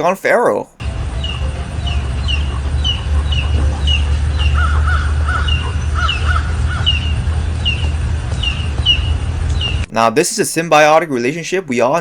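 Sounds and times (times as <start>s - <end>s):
lower harsh bird calls: 0.8s - 9.9s
steady low hum: 0.8s - 9.9s
short high bird chirps: 8.4s - 9.9s.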